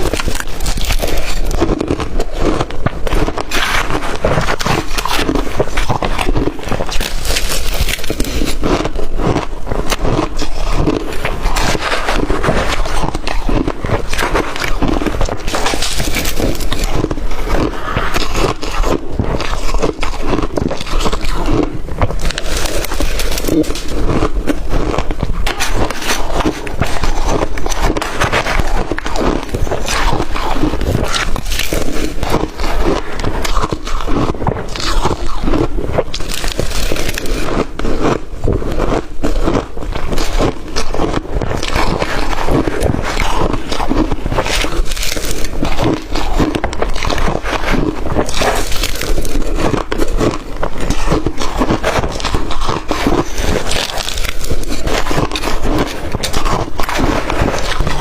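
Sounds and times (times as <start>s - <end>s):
ice crunching being chewed: 0.0s - 58.0s.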